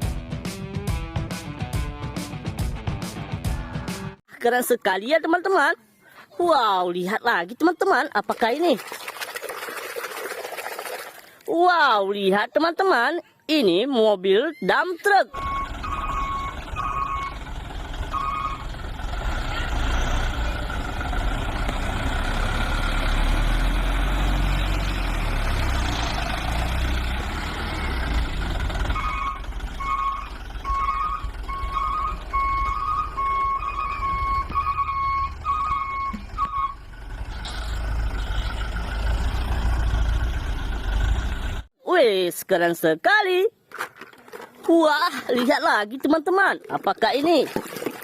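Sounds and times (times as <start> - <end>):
vehicle reversing beeper: 15.3 - 20.8, 27.2 - 41.3.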